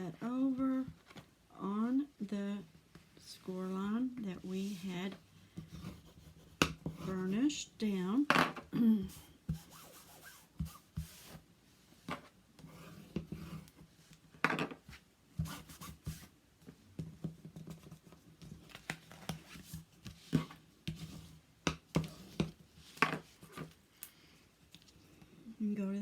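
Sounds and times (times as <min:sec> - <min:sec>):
paper scraping and rubbing: 0:09.6 - 0:11.4.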